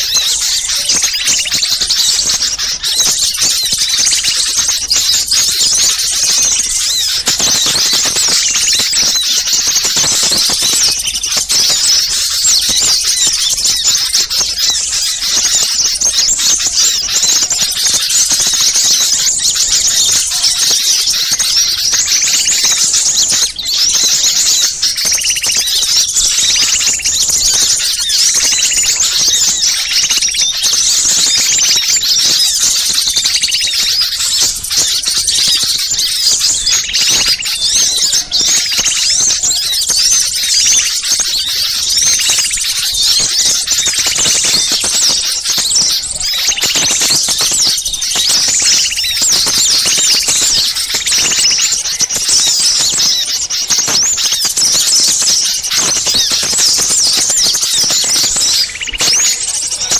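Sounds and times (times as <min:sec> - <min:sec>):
lower bird trill: 0:00.0 - 0:59.9
small birds twittering: 0:00.0 - 0:59.9.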